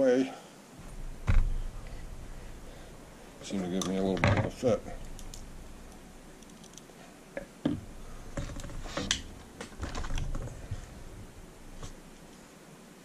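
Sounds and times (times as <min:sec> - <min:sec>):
plastic parts clicking and knocking: 0:03.8 - 0:10.9.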